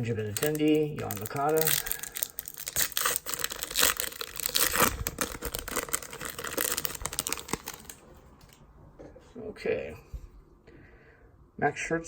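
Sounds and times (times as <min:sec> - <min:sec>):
plastic packaging crinkling and tearing: 0:00.0 - 0:08.6.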